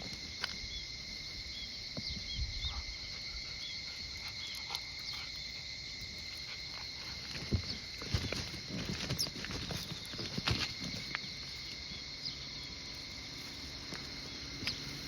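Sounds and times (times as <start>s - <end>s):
crickets singing: 0.0s - 15.0s
soft footsteps: 6.0s - 12.2s.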